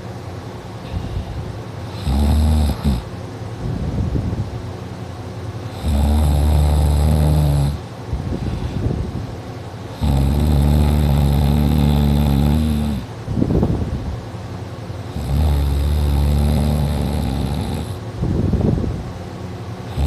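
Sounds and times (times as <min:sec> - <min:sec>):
person snoring heavily: 0:00.9 - 0:03.1, 0:05.7 - 0:07.8, 0:09.9 - 0:13.1, 0:15.1 - 0:18.0
short snort: 0:10.0 - 0:13.1, 0:15.2 - 0:18.0.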